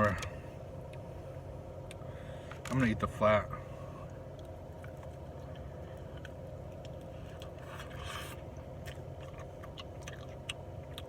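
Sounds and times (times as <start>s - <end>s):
low hum: 0.0s - 11.0s
person chewing crispy food: 4.0s - 11.0s.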